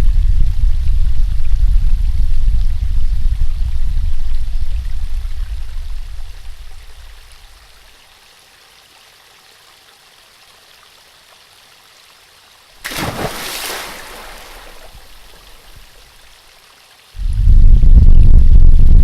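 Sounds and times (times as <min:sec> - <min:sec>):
faint steady hiss: 0:00.0 - 0:19.0
water splash: 0:12.8 - 0:16.4.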